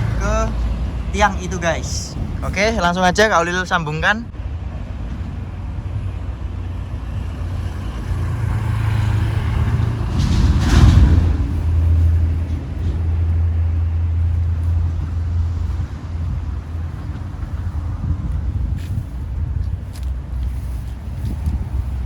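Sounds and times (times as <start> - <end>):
vehicle rushing past: 0.0 - 2.4, 6.7 - 18.8
low engine rumble of traffic: 0.0 - 22.0.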